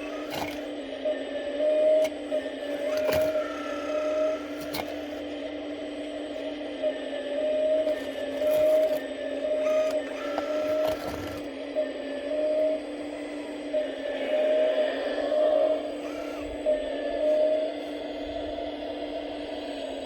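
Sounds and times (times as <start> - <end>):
hydraulic pump whining: 0.0 - 0.8, 1.9 - 5.2, 7.8 - 11.5, 13.1 - 18.8.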